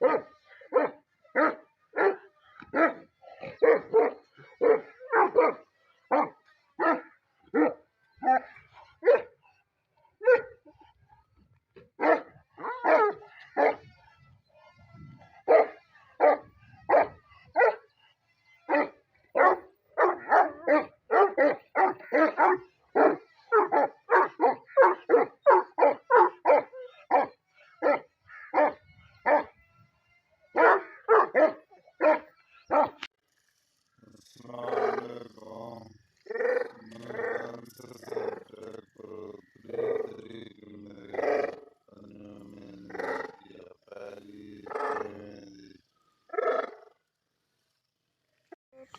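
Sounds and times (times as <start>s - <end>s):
dog barking: 0.0s - 9.4s, 10.2s - 10.8s, 12.0s - 14.0s, 15.4s - 17.9s, 18.7s - 29.6s, 30.5s - 33.1s.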